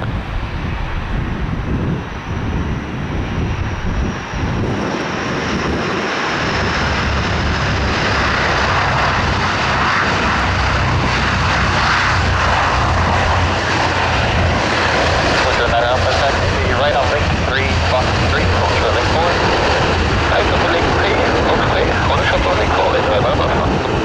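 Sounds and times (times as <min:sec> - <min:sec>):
turboprop engines: 0:00.0 - 0:24.0
wind rumbling on microphone: 0:00.0 - 0:24.0.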